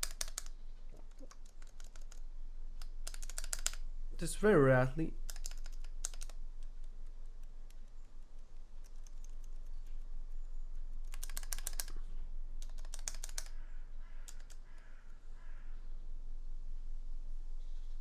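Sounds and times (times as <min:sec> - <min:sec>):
mechanical keyboard keys clicking: 0:00.0 - 0:02.2, 0:02.8 - 0:03.8, 0:05.2 - 0:06.4, 0:07.3 - 0:09.8, 0:11.0 - 0:12.0, 0:12.6 - 0:13.6, 0:14.2 - 0:14.6.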